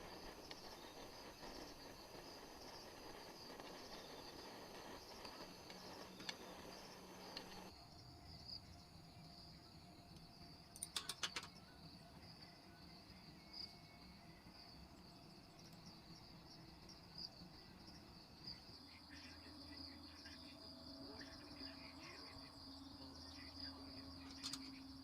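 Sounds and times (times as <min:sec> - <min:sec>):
soft scattered ticks: 0:00.0 - 0:07.7, 0:23.3 - 0:24.8
crickets chirring: 0:00.0 - 0:25.0.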